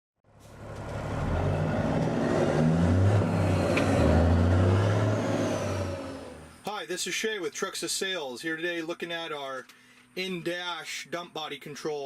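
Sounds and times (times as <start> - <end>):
diesel truck engine running: 0.3 - 6.6.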